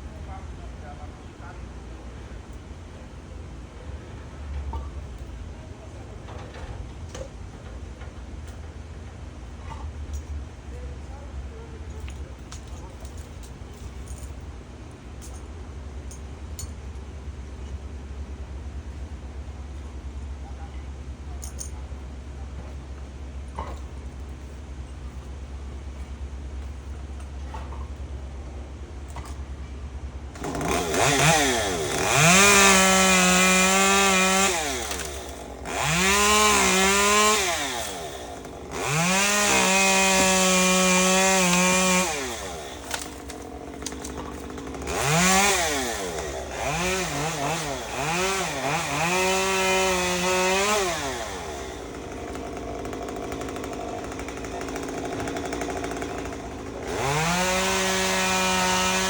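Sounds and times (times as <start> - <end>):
chainsaw revving: 30.4 - 59.0.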